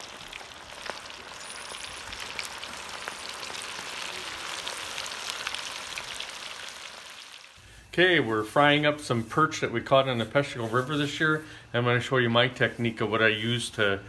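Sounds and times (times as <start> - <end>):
oil crackles and pops: 0.0 - 7.6
hot oil sizzling: 0.0 - 9.4.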